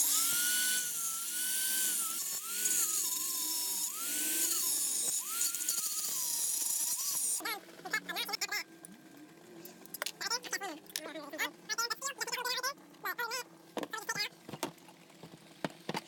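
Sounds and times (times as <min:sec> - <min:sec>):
electric grinder grinding metal: 0:00.0 - 0:07.4.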